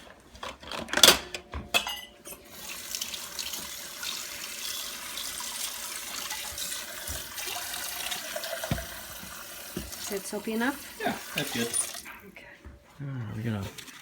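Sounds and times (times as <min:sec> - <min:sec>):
tap water running into container: 0:02.4 - 0:12.2, 0:13.6 - 0:14.0.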